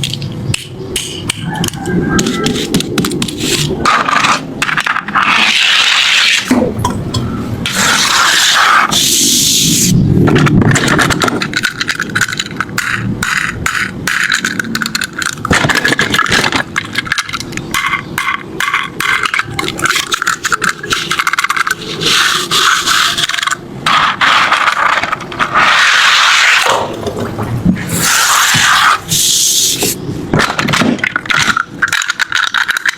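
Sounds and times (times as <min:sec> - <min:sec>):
toy cars scraping and rattling: 0:01.3 - 0:32.9
rapid clicks and clatter: 0:10.2 - 0:25.9, 0:30.3 - 0:32.9.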